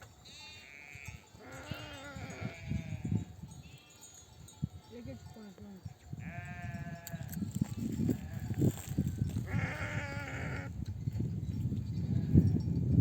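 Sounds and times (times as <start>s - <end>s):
sheep bleating: 0.2s - 4.0s, 6.2s - 7.4s, 9.4s - 10.7s.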